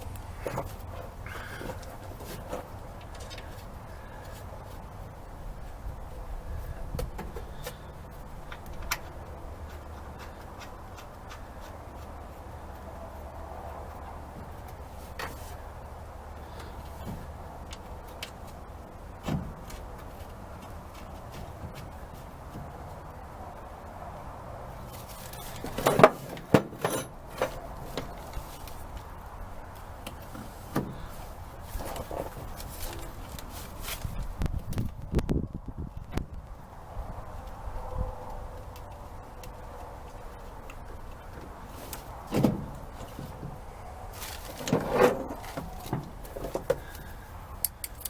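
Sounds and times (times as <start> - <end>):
metal tools knocking and clinking: 25.5 - 28.2
metal parts clicking and tapping: 44.6 - 48.0.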